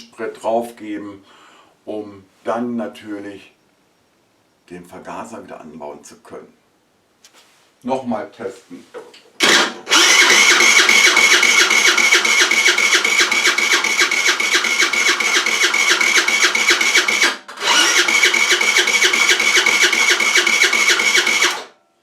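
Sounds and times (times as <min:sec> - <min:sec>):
scooter engine cranking: 0:09.4 - 0:21.7
starter motor whine: 0:09.4 - 0:21.7.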